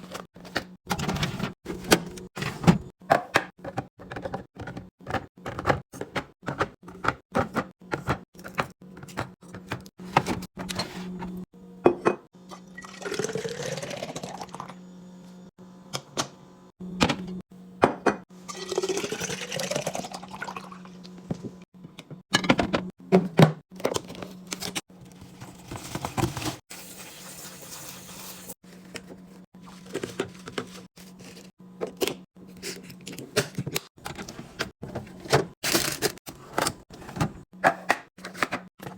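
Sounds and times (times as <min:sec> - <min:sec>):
liquid pouring into container: 0:12.8 - 0:14.7.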